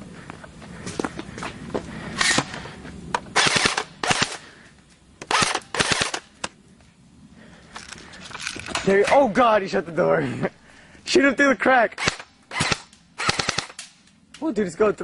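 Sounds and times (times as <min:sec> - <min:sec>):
airsoft guns firing: 0:03.3 - 0:04.5, 0:05.3 - 0:06.4, 0:12.0 - 0:14.0.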